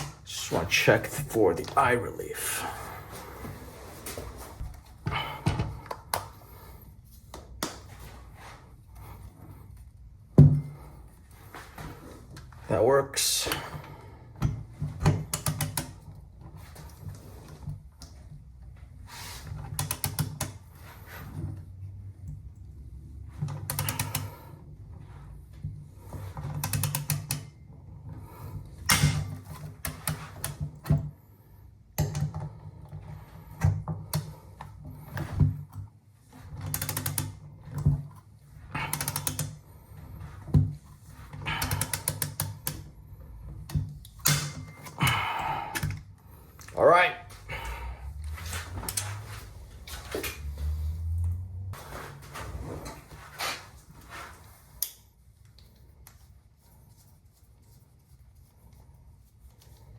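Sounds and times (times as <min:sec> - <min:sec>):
ratcheting hand driver clicking: 0:26.6 - 0:27.5, 0:36.7 - 0:37.4, 0:38.9 - 0:39.6, 0:41.6 - 0:42.8.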